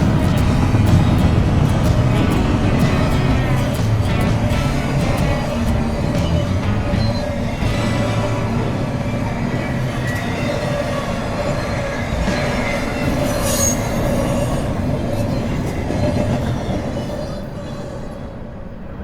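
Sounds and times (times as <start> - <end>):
toy train rattling and whirring: 0.0 - 17.6.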